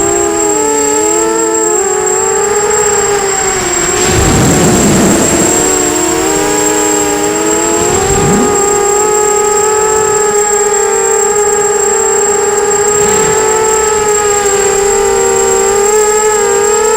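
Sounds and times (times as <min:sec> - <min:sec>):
drone motors whining: 0:00.0 - 0:16.9
high thin whine: 0:11.6 - 0:16.9
wind noise rush: 0:12.7 - 0:15.9.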